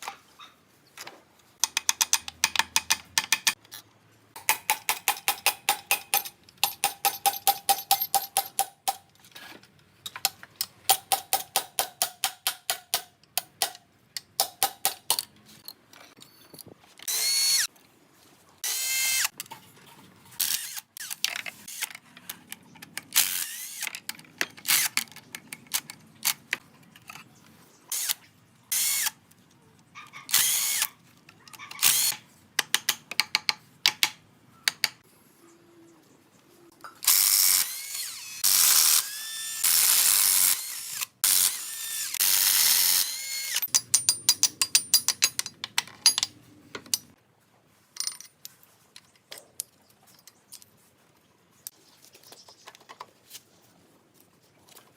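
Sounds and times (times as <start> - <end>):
power tool whirring: 17.0 - 17.7, 18.6 - 19.3, 23.2 - 23.9, 37.0 - 43.7.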